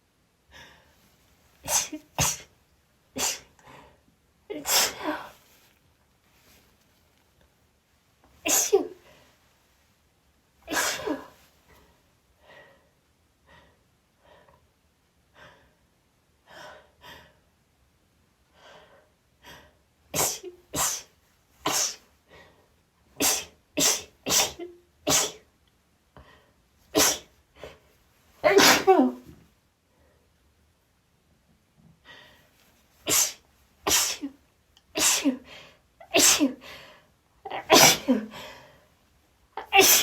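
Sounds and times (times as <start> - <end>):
woman sneezing: 1.6 - 2.5, 3.2 - 3.5, 4.5 - 5.4, 8.5 - 9.0, 10.6 - 11.4, 20.2 - 22.0, 23.2 - 25.4, 27.0 - 27.4, 28.4 - 29.3, 33.1 - 34.4, 35.0 - 35.5, 36.1 - 36.6, 37.5 - 38.4, 39.6 - 40.0.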